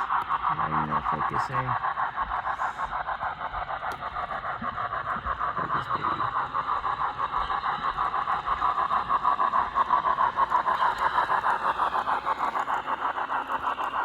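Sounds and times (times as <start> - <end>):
model steam locomotive chuffing: 0.0 - 14.0.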